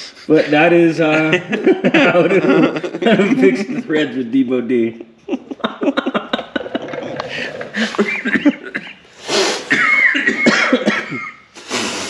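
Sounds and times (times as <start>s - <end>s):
men laughing: 0.3s - 4.2s, 4.8s - 9.0s, 9.7s - 11.4s
coughing: 6.3s - 11.6s.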